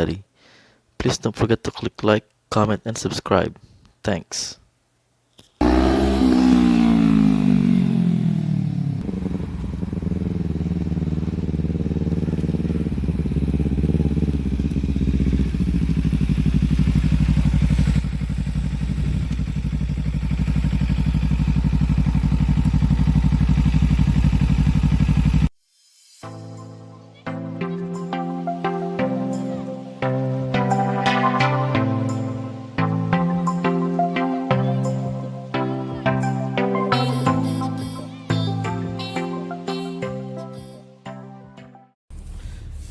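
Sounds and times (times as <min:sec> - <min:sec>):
car engine idling: 0:07.1 - 0:25.4.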